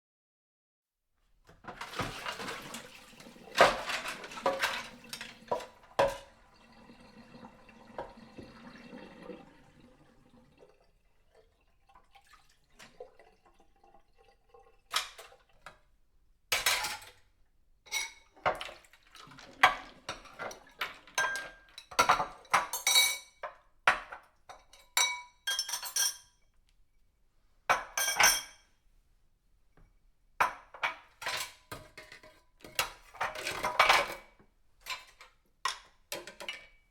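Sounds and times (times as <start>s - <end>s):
dishes clinking: 17.9s - 26.4s, 27.7s - 28.7s.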